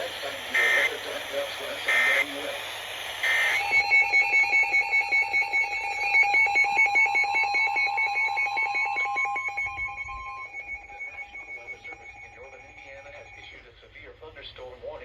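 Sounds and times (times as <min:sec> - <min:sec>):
steady alarm tone: 0:00.0 - 0:14.1
alarm beeping at two pitches: 0:00.6 - 0:01.0, 0:01.9 - 0:02.3, 0:03.2 - 0:13.6.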